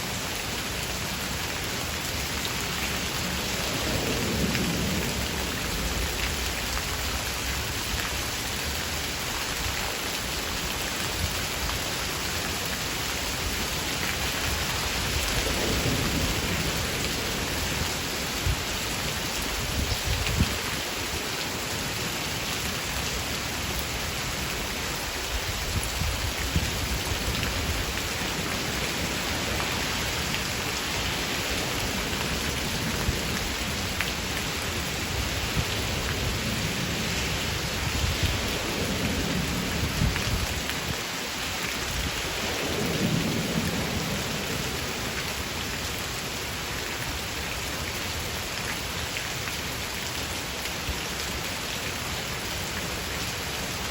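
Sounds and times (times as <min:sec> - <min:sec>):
rain hissing: 0:00.0 - 0:49.0
thunder rumbling: 0:03.2 - 0:06.6, 0:14.4 - 0:20.7.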